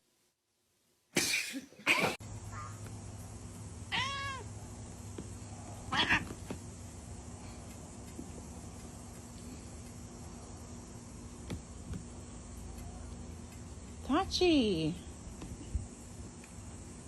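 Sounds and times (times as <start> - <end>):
cat meowing: 3.9 - 4.5, 5.9 - 6.4.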